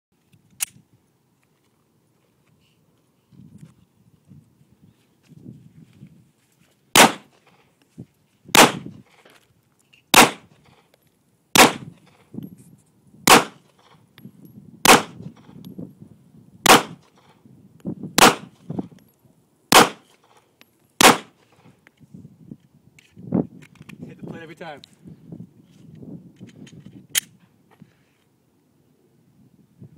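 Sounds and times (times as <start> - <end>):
gunshots with echo: 7.0 - 7.3, 8.6 - 8.8, 10.2 - 10.5, 11.6 - 11.9, 13.3 - 13.6, 14.9 - 15.2, 16.7 - 17.0, 18.2 - 18.5, 19.7 - 20.0, 21.0 - 21.3.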